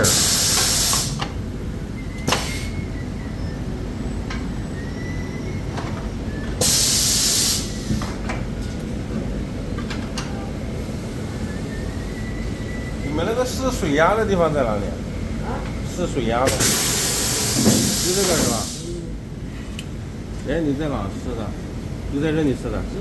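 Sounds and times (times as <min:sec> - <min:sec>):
compressed air hissing: 0:00.0 - 0:01.4, 0:02.2 - 0:03.7, 0:06.6 - 0:08.2, 0:16.4 - 0:19.7
factory machinery running: 0:00.0 - 0:23.0.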